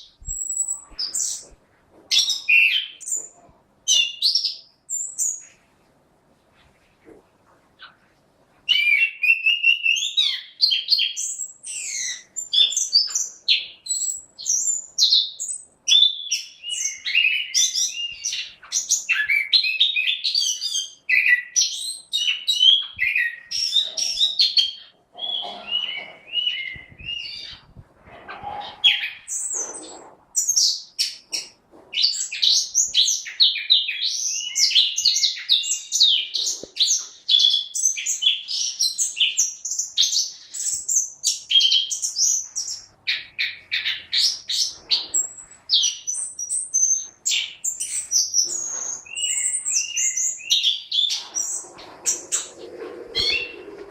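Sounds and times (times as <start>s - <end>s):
thrush singing whistled song: 44.2s - 52.4s, 53.2s - 53.7s.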